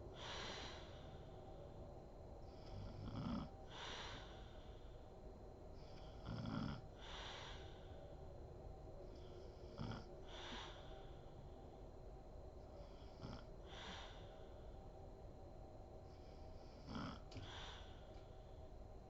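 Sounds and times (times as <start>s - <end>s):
breathy hissing breath: 0.1s - 1.7s, 2.5s - 5.1s, 6.9s - 8.2s, 9.1s - 11.6s, 12.7s - 14.8s, 16.1s - 18.6s
woman snoring: 2.6s - 4.3s, 5.9s - 7.6s, 16.8s - 17.8s.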